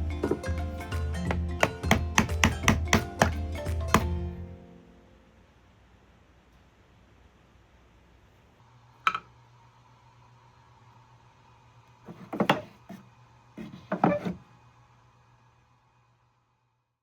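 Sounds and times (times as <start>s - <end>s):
hard objects knocking and clattering: 0.0s - 4.2s, 12.1s - 12.8s
faint steady tone: 4.4s - 12.0s.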